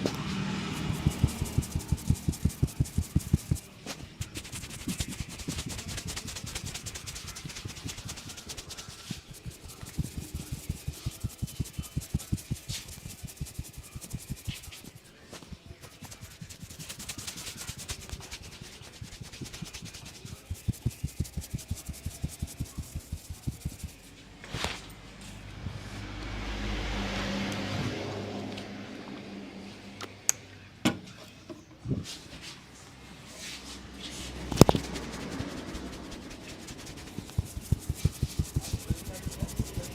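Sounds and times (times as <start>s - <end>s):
hands rubbing hair and scalp: 0.2s - 25.3s, 33.3s - 39.9s.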